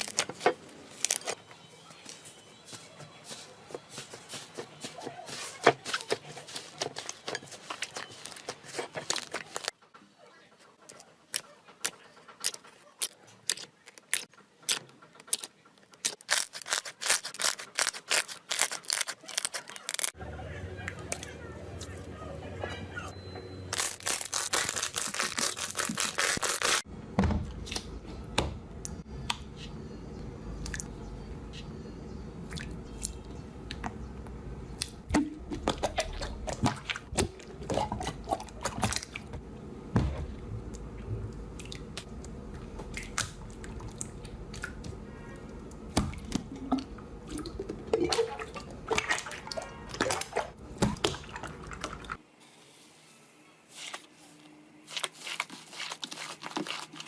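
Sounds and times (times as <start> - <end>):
low steady hum: 26.8 - 52.3.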